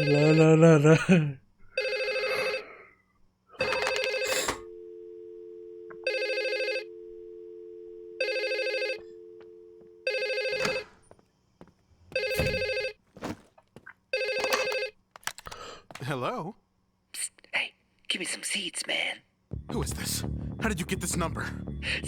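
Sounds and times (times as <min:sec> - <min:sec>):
telephone ringing: 0:00.0 - 0:00.8, 0:01.8 - 0:02.7, 0:03.6 - 0:11.1, 0:12.1 - 0:13.0, 0:14.1 - 0:15.0.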